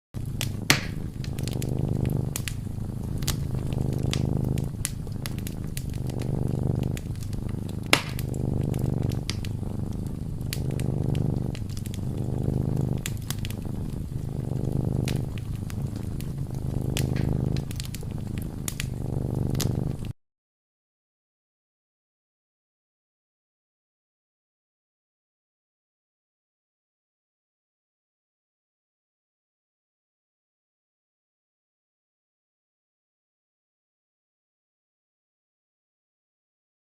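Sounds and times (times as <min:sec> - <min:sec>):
cat purring: 0:00.2 - 0:20.2
wood fire crackling and popping: 0:00.2 - 0:20.2.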